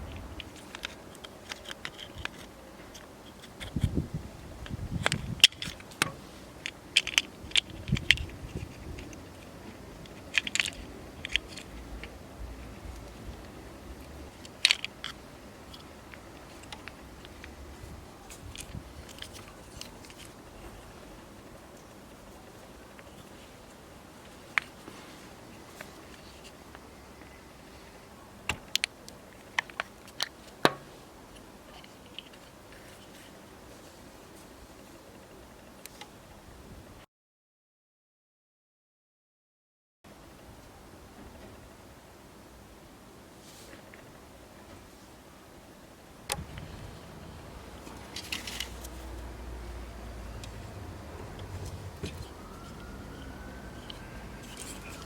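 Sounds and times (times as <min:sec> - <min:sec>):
hard objects clicking and knocking: 0:29.6 - 0:30.9.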